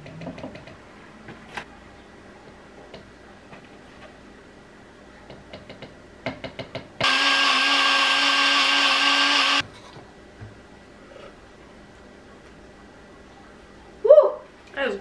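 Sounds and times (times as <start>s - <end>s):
kitchen blender running: 7.0s - 9.6s.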